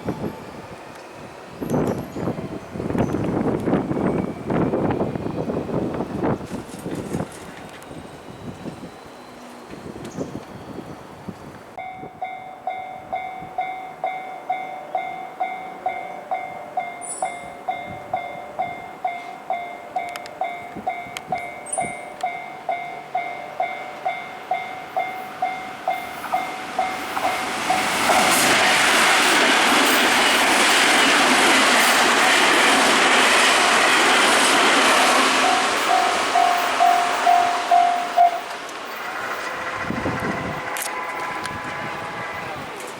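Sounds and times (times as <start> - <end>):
train passing: 0.0 - 42.9
level crossing warning bell dinging: 11.8 - 28.3, 35.3 - 38.6.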